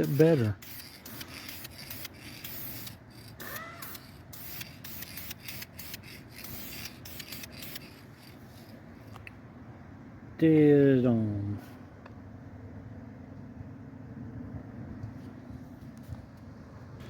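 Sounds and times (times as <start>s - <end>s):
aerosol can spraying: 0.0s - 8.7s.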